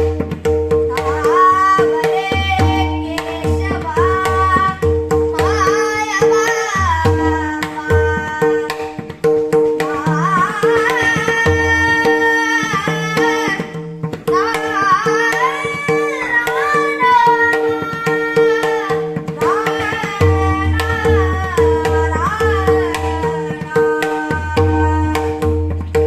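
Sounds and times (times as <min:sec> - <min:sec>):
tabla strokes: 0:00.0 - 0:26.0.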